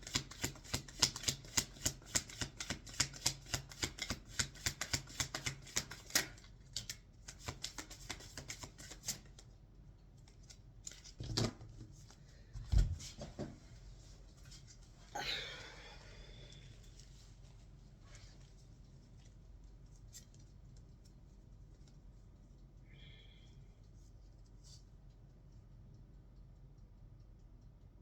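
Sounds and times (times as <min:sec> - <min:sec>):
cards being shuffled: 0:00.0 - 0:09.4.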